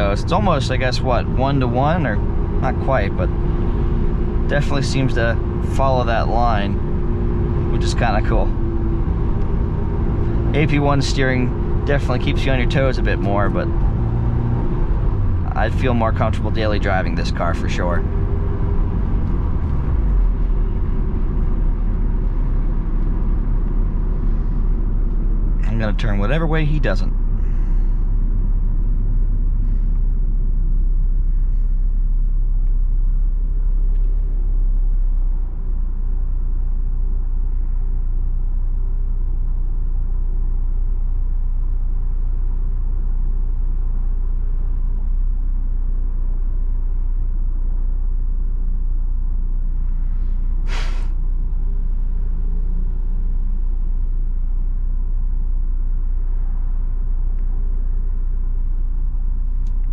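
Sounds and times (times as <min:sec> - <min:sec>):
car engine and road noise: 0:00.0 - 0:59.9
short sharp noise: 0:50.6 - 0:51.2.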